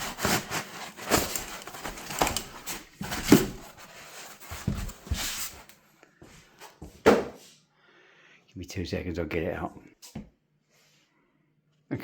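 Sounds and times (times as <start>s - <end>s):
cardboard scraping and rustling: 0.0s - 5.7s.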